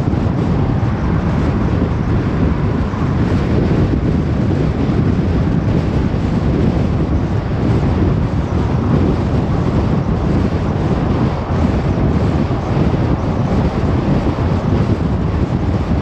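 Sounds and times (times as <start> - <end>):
tyre and wind noise: 0.0 - 16.0.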